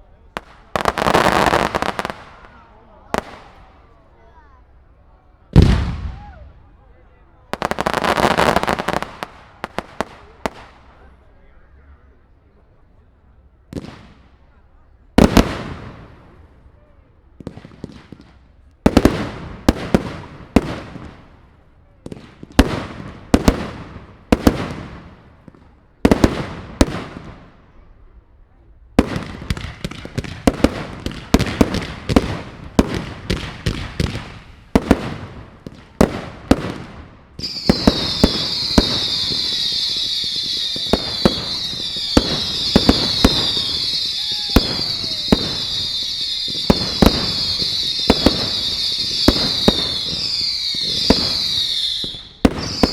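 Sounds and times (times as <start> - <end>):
shrill falling firework whistles: 37.4 - 52.9.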